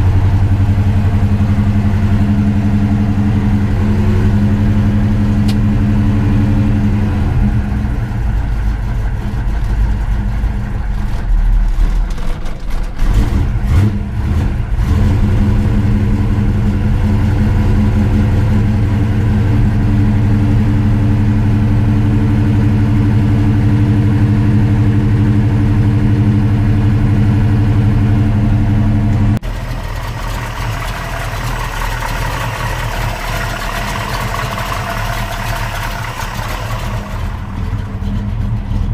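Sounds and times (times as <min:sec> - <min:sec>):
car engine running: 0:00.0 - 0:38.9
quieter hissy engine: 0:29.4 - 0:38.4.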